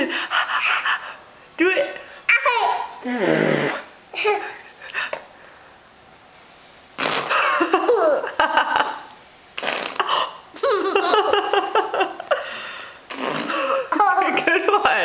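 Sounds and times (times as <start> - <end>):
child laughing: 2.3 - 3.1, 4.1 - 4.8, 7.3 - 9.1, 10.0 - 12.4, 13.5 - 14.8
child blowing mouth fart noise: 3.0 - 3.9, 7.0 - 7.5, 9.6 - 10.4, 13.1 - 13.9.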